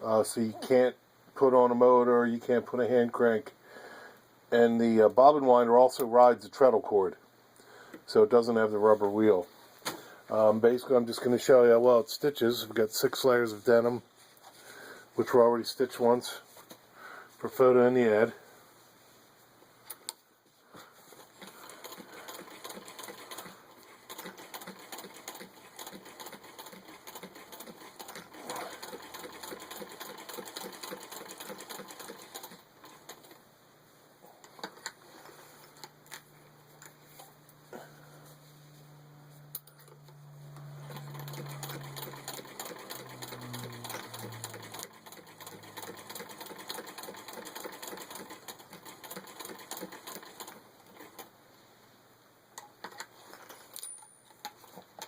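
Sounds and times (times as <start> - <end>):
sewing machine clattering: 21.4 - 33.4, 40.8 - 51.3.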